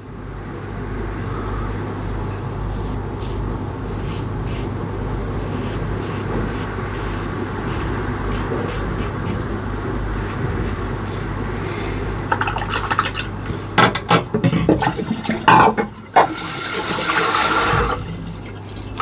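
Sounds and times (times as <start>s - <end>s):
tap water running into sink: 14.7s - 19.0s.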